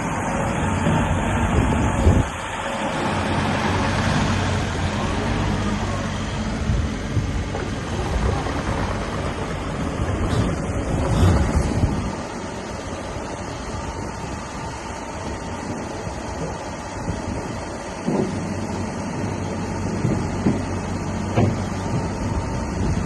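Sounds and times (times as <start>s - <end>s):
excavator diesel engine running: 0.0s - 23.0s
knocks: 21.3s - 22.2s.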